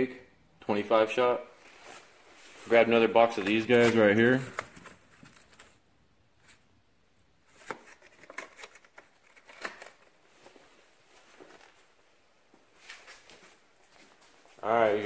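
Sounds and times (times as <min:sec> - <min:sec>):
boxes being handled: 0:01.6 - 0:05.8, 0:07.4 - 0:15.0.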